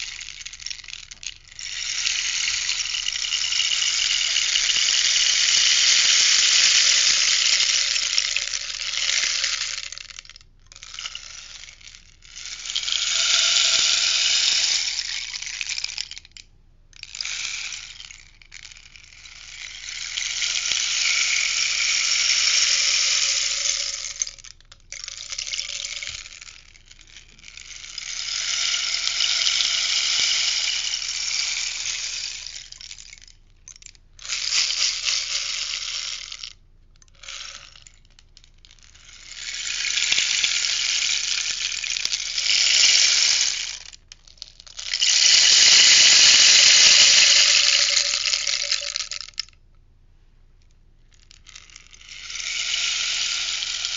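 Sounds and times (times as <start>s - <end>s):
rainstick rustling: 0.0s - 13.0s, 23.6s - 49.6s.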